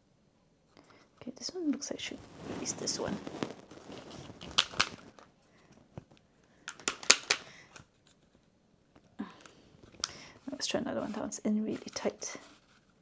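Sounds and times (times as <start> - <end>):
puzzle box piece clicking: 4.5 - 5.0, 6.6 - 7.9.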